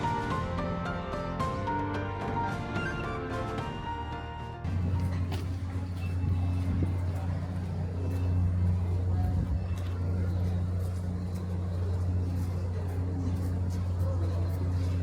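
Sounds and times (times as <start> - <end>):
vehicle engine running: 4.7 - 15.0.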